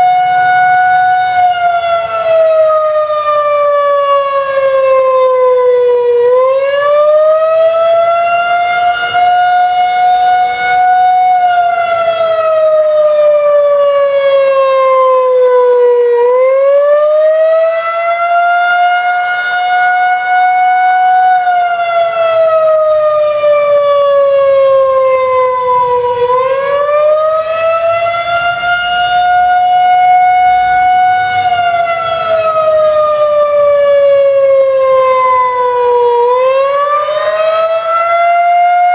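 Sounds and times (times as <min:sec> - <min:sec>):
outdoor warning siren wailing: 0:00.0 - 0:38.9.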